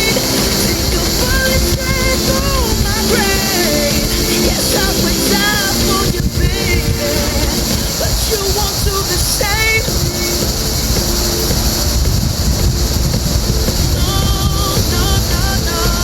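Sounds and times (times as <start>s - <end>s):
pop song with singing: 0.0s - 16.0s
steady low rumble: 0.0s - 16.0s.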